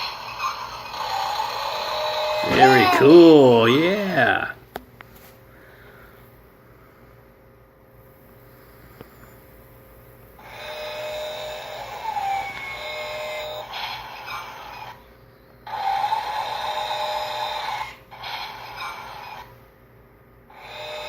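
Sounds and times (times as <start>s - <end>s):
toy bulldozer motors whirring: 0.0s - 4.4s, 10.4s - 15.0s, 15.7s - 19.5s, 20.5s - 21.0s.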